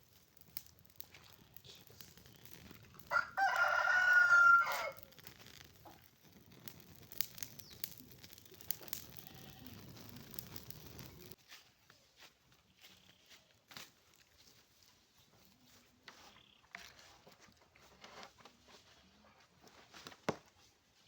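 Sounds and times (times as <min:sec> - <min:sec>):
rooster crowing: 0:03.0 - 0:05.2.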